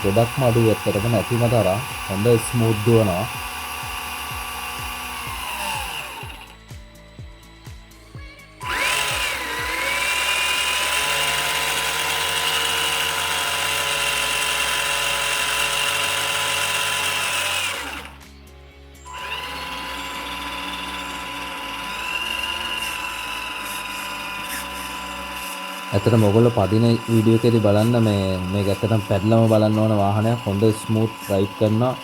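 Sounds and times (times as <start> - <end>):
electric motor whining: 0.0 - 32.0.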